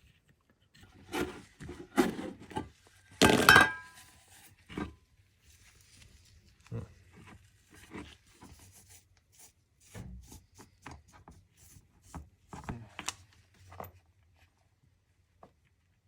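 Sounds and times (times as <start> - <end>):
hands working with parts and tools: 0.0 - 4.9.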